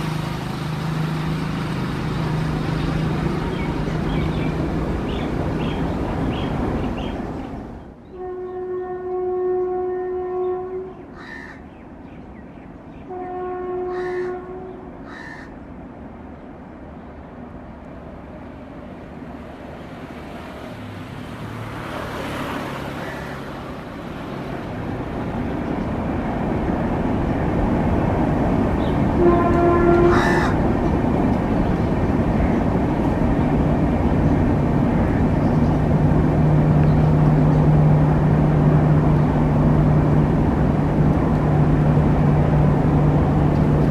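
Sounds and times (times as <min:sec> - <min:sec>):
long horn blasts: 0:08.1 - 0:11.0, 0:13.1 - 0:15.0, 0:29.1 - 0:30.6
crows cawing: 0:11.2 - 0:11.6, 0:13.9 - 0:14.3, 0:15.1 - 0:15.6, 0:23.0 - 0:23.6, 0:30.1 - 0:30.6.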